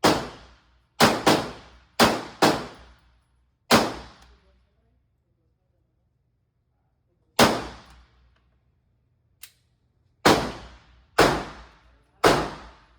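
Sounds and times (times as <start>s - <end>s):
pistol shots echoing: 0.0s - 0.4s, 1.0s - 2.8s, 7.4s - 7.9s, 10.3s - 12.8s.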